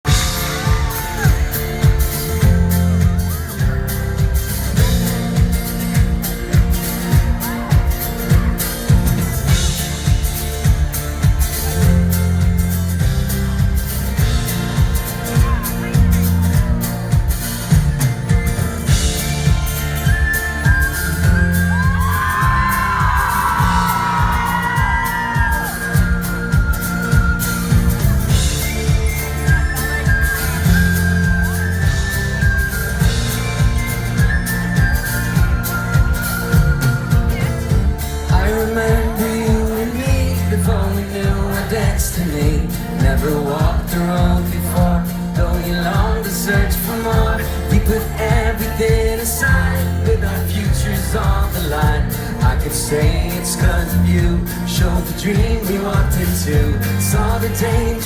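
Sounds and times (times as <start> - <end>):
heavy bass beat: 0.0 - 58.0
live pop band playing: 0.0 - 58.0
crowd whooping and screaming: 0.1 - 5.5, 18.2 - 43.0.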